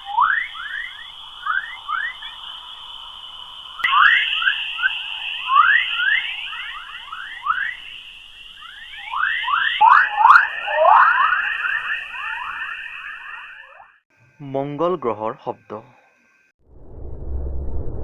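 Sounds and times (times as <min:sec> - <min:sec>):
rising radio chirps: 0:00.0 - 0:14.0
steady high tone: 0:00.0 - 0:16.1.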